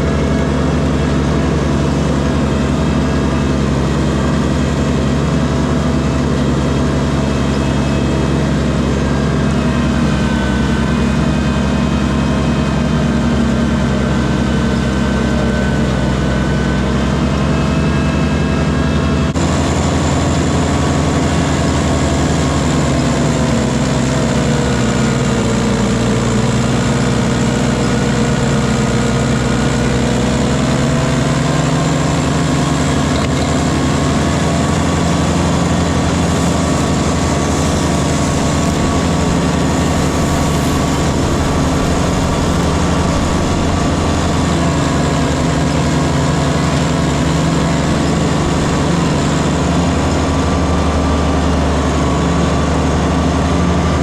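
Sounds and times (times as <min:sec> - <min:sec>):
tractor engine running: 0:00.0 - 0:54.0.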